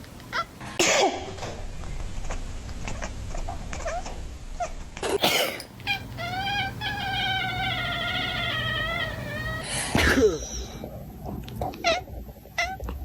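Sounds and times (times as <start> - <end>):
cat yowling: 5.8 - 9.7.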